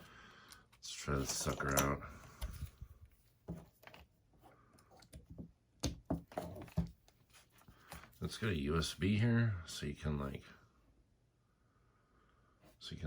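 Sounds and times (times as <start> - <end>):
knocks and taps of handled objects: 3.5 - 4.0, 5.0 - 7.0.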